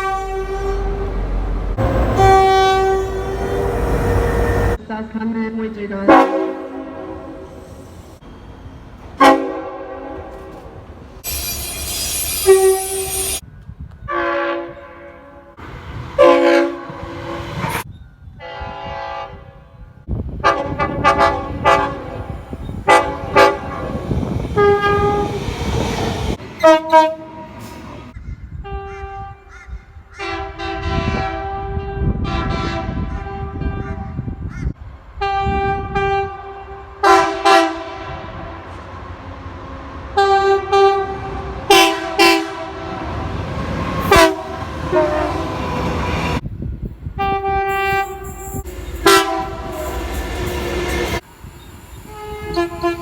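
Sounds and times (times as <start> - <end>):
train horn blasts: 0.0 - 4.8, 6.1 - 7.6, 9.2 - 13.4, 14.1 - 15.6, 16.2 - 17.8, 18.4 - 25.5, 26.6 - 27.7, 28.6 - 29.5, 30.2 - 34.4, 35.2 - 38.8, 40.1 - 46.4, 47.2 - 51.2, 52.0 - 53.0
rumble of rail traffic: 0.0 - 53.0.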